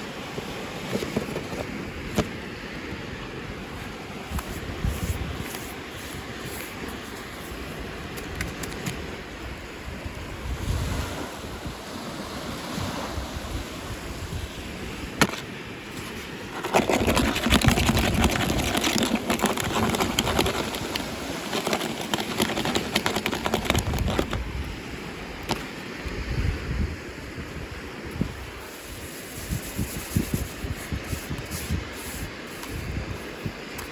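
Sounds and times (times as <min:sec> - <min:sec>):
packaging rustling and crinkling: 0:16.5 - 0:24.4.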